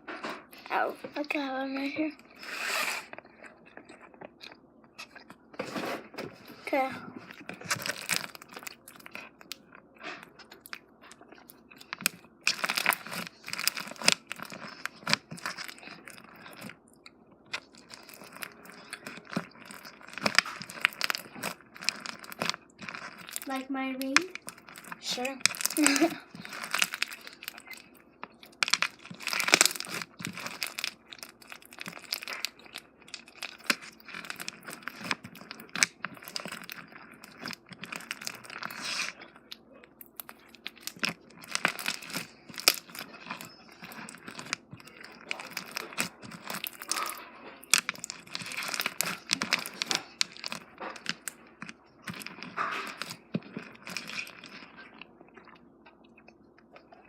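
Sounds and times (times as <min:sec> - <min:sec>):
slime squeezed by hand crackling: 0:11.5 - 0:16.6, 0:17.6 - 0:39.2.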